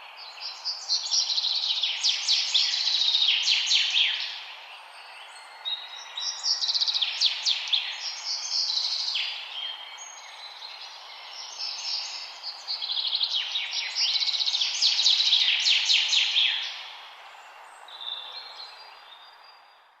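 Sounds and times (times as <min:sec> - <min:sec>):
songbirds singing: 0:00.0 - 0:20.0.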